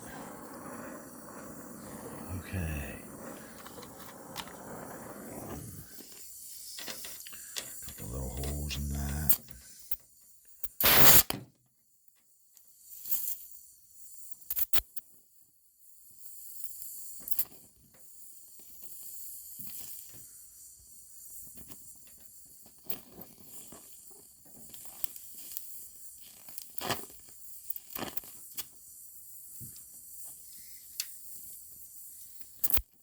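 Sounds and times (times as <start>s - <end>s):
welding hiss and crackling: 0.0s - 9.6s, 10.6s - 11.3s.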